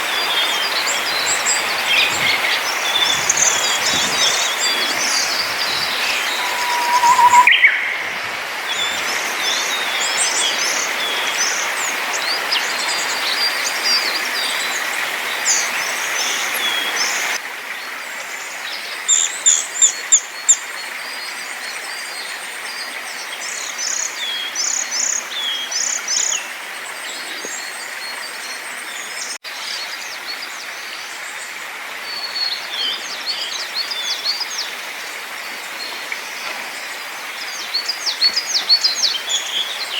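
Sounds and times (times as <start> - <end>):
songbirds singing: 0.0 - 17.4.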